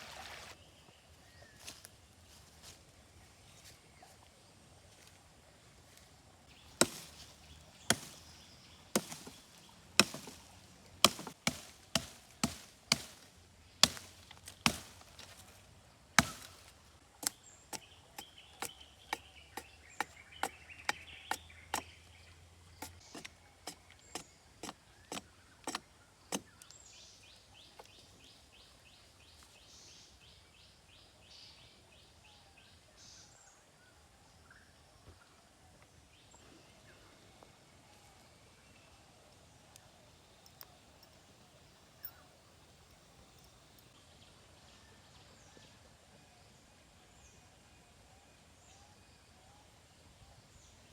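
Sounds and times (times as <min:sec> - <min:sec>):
chopping on wood: 0:06.8 - 0:15.4, 0:16.2 - 0:22.0, 0:22.8 - 0:26.6.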